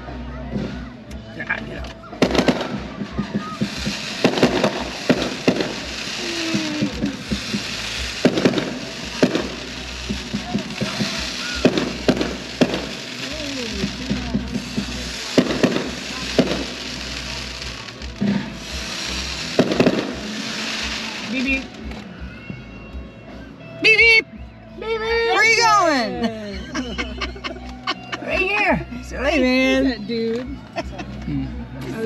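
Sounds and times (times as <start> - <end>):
crowd noise: 0.0 - 32.0
fireworks bangs and crackles: 0.1 - 22.3.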